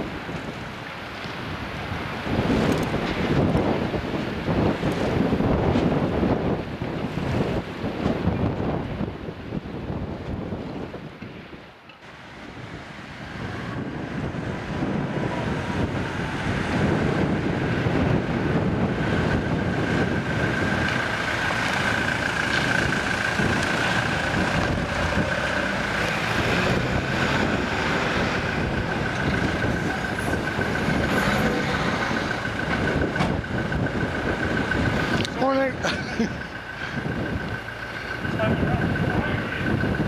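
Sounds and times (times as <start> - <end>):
heavy vehicle rumbling: 0.0 - 40.0
steady high whine: 16.9 - 40.0.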